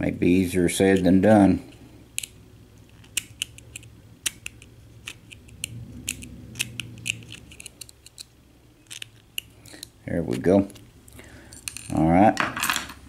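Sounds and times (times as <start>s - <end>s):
metal tool clicking on padlock: 3.0s - 9.9s.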